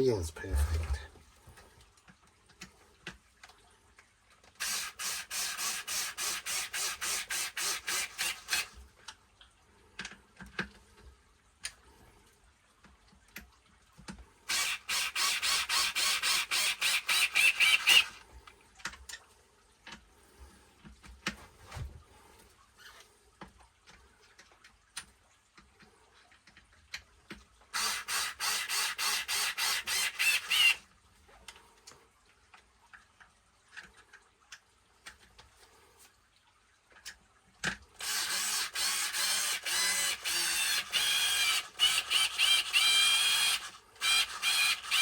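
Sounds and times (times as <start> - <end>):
tool ratcheting clicks: 4.6 - 8.7, 14.5 - 18.2, 27.8 - 30.8, 38.0 - 45.0.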